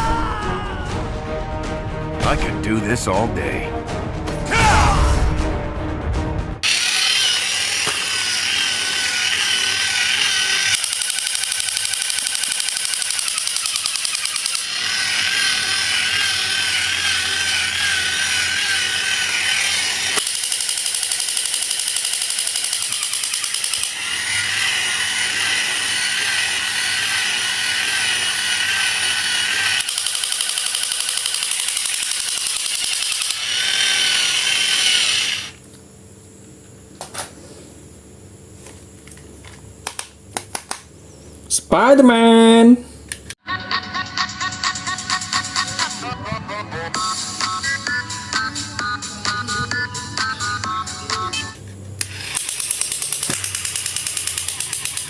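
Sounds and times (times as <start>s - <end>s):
toy motor whirring: 6.6s - 35.6s, 52.0s - 55.0s.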